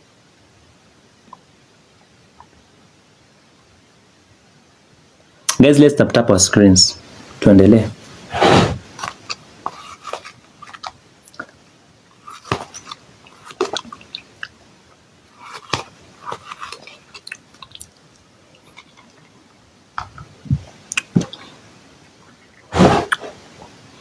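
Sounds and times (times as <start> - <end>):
soft mouth clicks and smacks: 15.4 - 19.3, 20.0 - 21.5.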